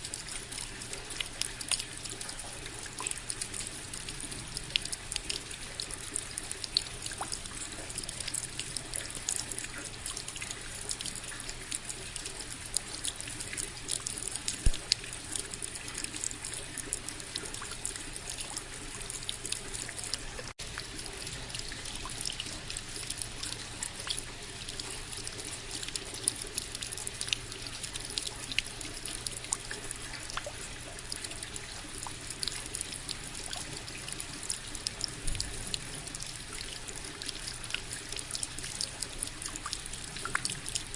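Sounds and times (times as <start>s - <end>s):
raindrops ticking close by: 0.0s - 40.9s
steady rain: 0.0s - 40.9s.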